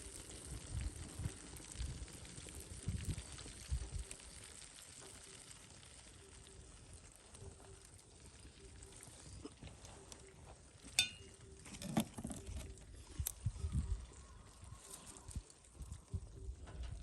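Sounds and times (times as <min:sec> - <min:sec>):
sharp metallic clink: 0:11.0 - 0:11.3.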